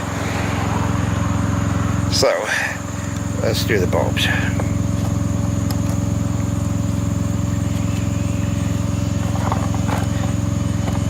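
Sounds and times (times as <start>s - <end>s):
diesel engine idling: 0.0s - 11.0s.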